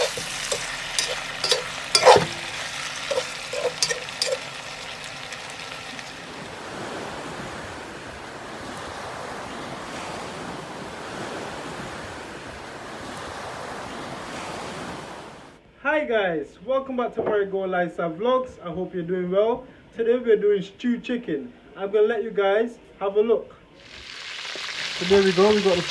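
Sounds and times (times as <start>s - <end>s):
utensil clinking on cooking pot: 0.0s - 6.2s
chicken sizzling in pan: 0.0s - 6.7s, 23.8s - 25.9s.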